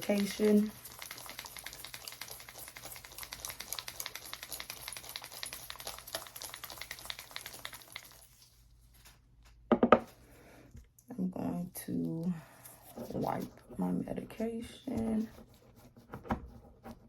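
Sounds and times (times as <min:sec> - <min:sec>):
vial rolling between palms: 0:00.2 - 0:08.4.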